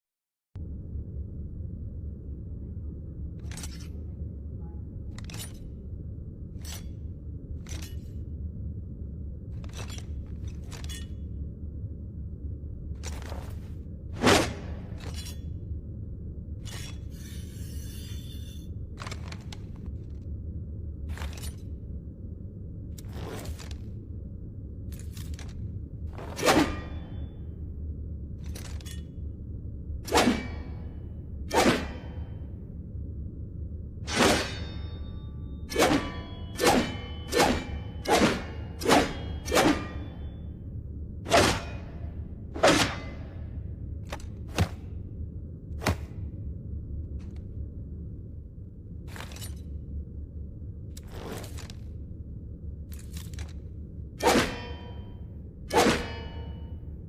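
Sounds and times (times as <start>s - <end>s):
steady low hum: 0.5s - 57.0s
sword blade strokes: 26.2s - 27.2s, 30.1s - 30.9s, 31.5s - 32.3s, 34.1s - 40.4s, 41.3s - 43.4s, 54.2s - 56.7s.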